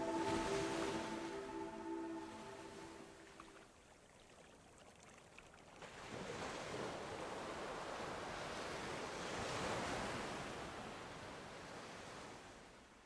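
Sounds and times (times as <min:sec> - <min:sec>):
rushing sea surf: 0:00.0 - 0:03.2.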